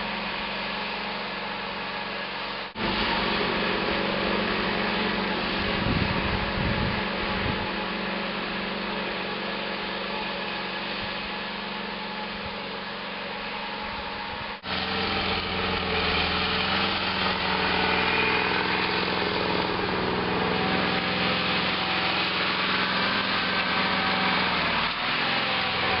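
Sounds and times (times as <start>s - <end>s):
tractor engine running: 0.0s - 26.0s.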